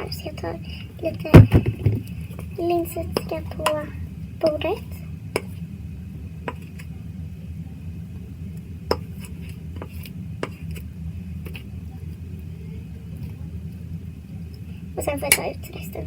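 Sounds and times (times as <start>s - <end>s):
steady low hum: 0.0s - 16.0s
ladle and containers knocking: 1.4s - 2.1s.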